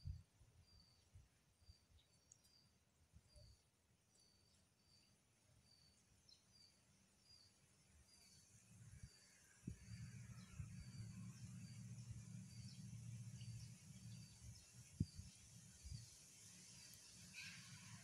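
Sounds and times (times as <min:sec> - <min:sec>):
faint bird song: 0:00.0 - 0:18.0
low steady rumble: 0:08.8 - 0:16.2.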